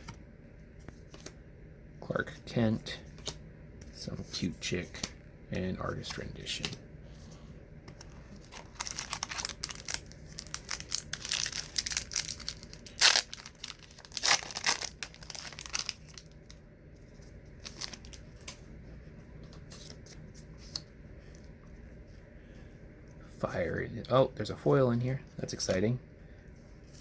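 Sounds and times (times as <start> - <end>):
card pack tearing and crinkling: 8.3 - 16.6, 17.6 - 18.6.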